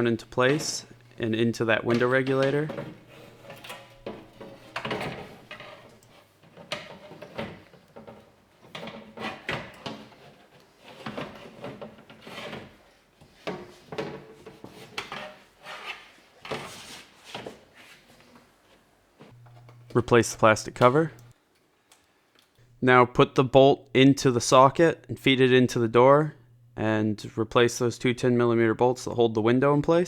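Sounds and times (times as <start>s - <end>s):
window glass scraping against seals: 1.9s - 7.8s.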